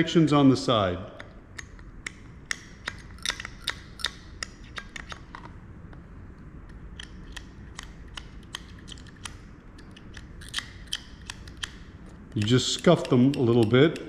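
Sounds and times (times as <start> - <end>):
screwdriver scraping metal contacts: 11.2 - 14.0.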